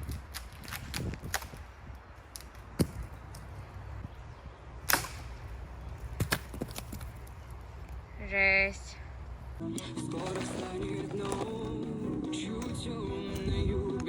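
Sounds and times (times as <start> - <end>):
dead branches cracking: 0.0 - 3.7.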